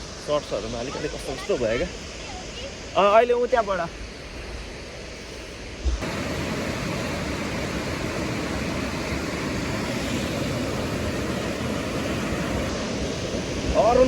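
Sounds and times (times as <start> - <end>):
river water rushing: 6.0 - 14.0.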